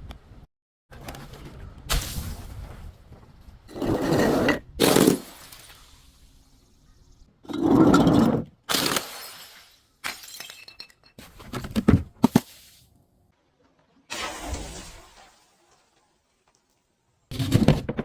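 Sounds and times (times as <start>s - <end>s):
glass bottles shattering: 8.7s - 11.2s.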